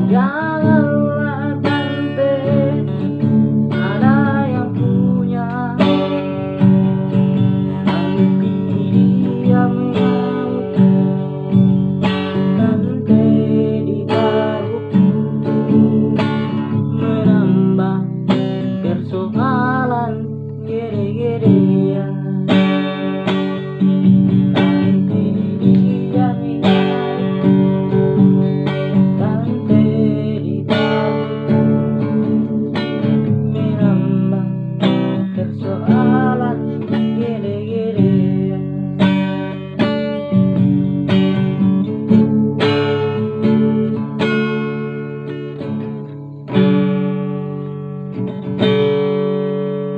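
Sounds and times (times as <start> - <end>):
person singing: 0.0 - 23.9, 24.5 - 40.2
acoustic guitar strumming chords: 0.0 - 49.9.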